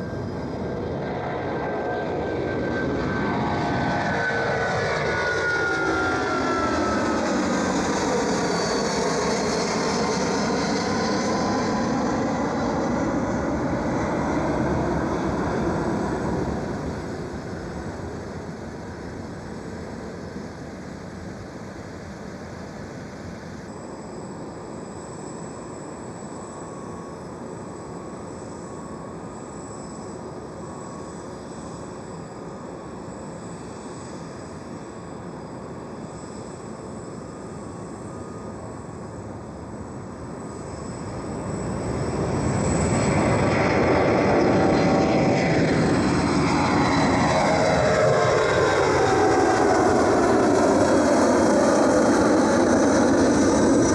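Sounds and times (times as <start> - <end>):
jet engines whining: 0.0 - 22.1, 25.7 - 53.9
distant jet rumble: 40.2 - 53.9.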